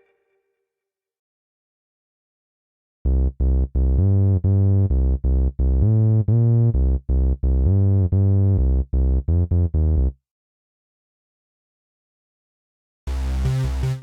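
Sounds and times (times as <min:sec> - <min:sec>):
keyboard bass line: 0:03.1 - 0:10.2, 0:13.1 - 0:14.0.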